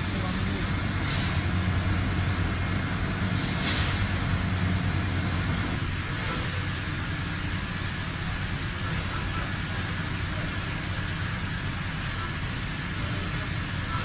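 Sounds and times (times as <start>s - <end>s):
industrial machinery humming: 0.0s - 14.0s
thin high whine: 13.8s - 14.0s.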